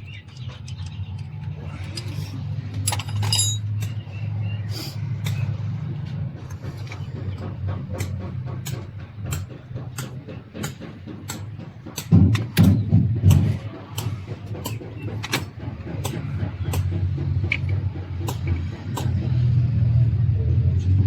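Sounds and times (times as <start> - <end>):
sharp regular clicks: 6.4 - 19.6.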